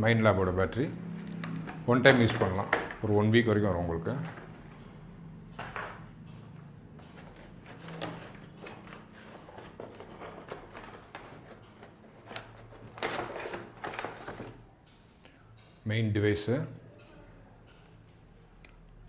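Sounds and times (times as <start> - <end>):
packaging rustling: 1.0 - 5.0, 7.0 - 14.7
clicks and taps of unpacking: 1.1 - 14.6.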